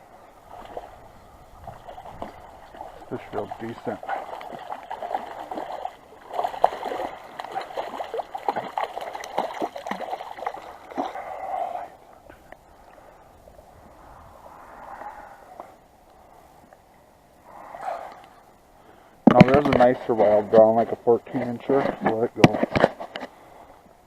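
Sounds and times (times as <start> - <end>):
fish splashing in water: 1.6 - 11.6.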